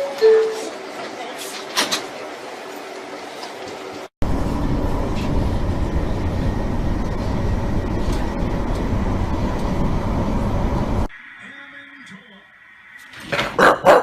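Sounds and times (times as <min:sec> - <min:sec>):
train rumbling on rails: 0:00.0 - 0:11.1.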